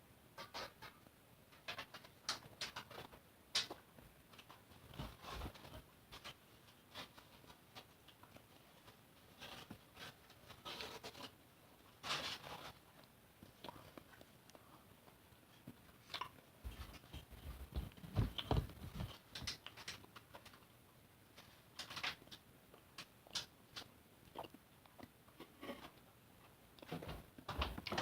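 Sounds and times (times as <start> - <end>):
soft low thumps: 16.7 - 19.1.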